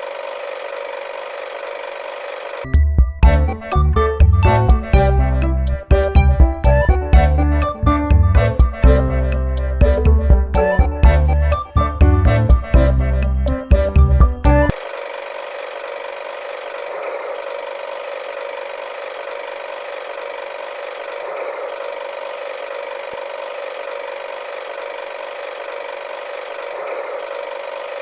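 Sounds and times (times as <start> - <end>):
children's music: 2.8 - 14.8.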